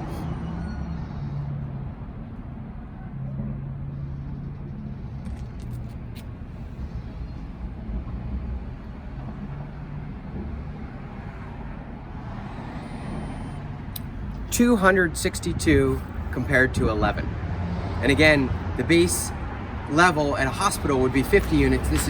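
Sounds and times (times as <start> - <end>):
road traffic rumble: 0.0 - 22.0.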